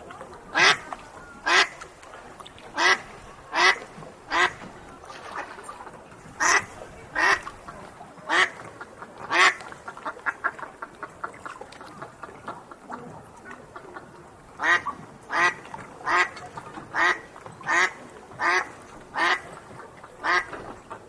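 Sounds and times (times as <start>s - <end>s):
duck quacking: 0.5s - 0.8s, 1.4s - 1.8s, 2.8s - 4.6s, 6.4s - 7.5s, 8.3s - 8.6s, 9.3s - 9.6s, 14.6s - 16.3s, 17.0s - 19.5s, 20.2s - 20.6s.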